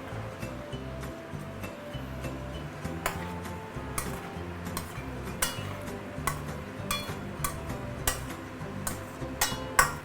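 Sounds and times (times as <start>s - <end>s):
background music: 0.0s - 10.0s
utensil clinking against pot: 3.0s - 10.0s.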